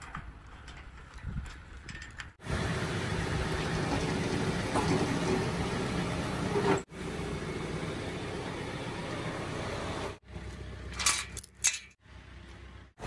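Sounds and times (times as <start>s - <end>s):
tractor engine running: 0.0s - 13.0s.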